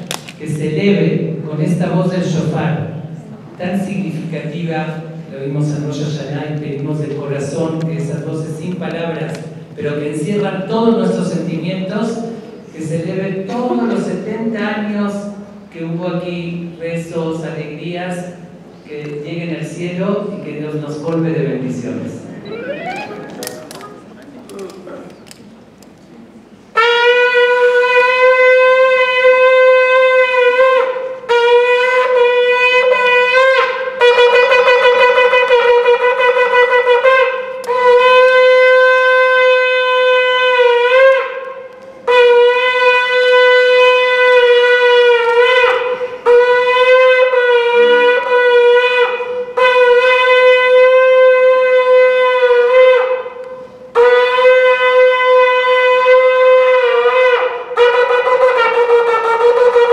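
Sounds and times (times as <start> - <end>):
shofar blasts: 26.7 - 59.9.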